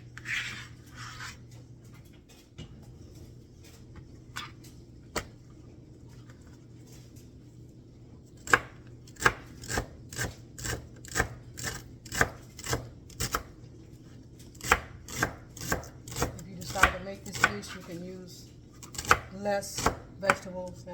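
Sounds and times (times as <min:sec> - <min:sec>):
knife chopping celery: 0:08.4 - 0:13.6, 0:14.5 - 0:18.0, 0:18.8 - 0:20.9.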